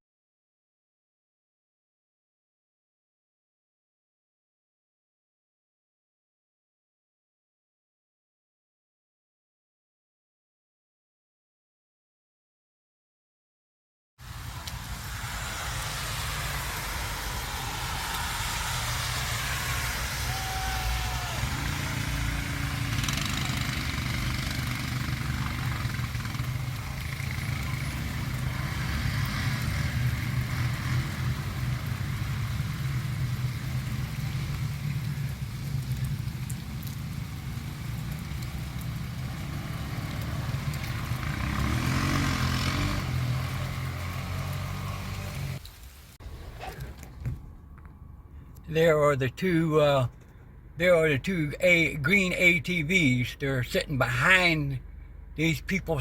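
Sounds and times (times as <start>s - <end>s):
vehicle engine and road rumble: 14.2s - 56.0s.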